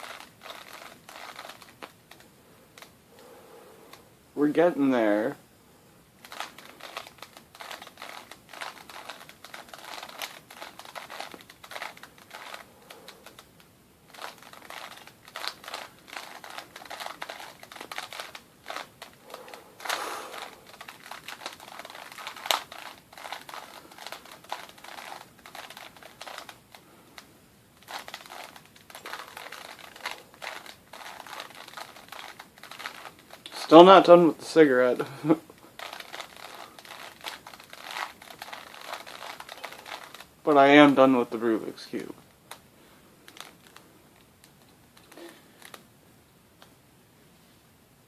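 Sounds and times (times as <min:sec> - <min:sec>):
puzzle cube plastic clicking: 0:00.0 - 0:02.2, 0:06.2 - 0:33.6, 0:35.6 - 0:40.3.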